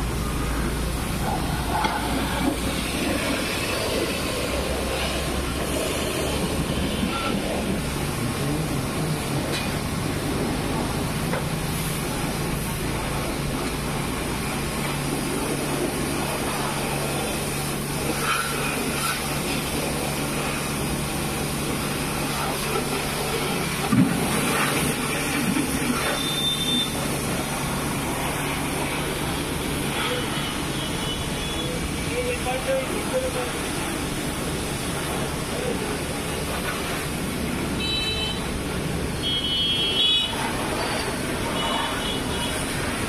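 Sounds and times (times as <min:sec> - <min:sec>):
pressure washer motor hum: 0:00.0 - 0:43.0
pressure washer spray hiss: 0:00.0 - 0:43.0.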